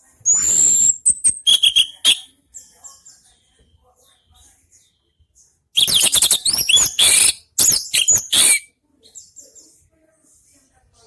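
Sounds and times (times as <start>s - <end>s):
thrush singing: 0.4s - 2.3s, 5.8s - 8.7s.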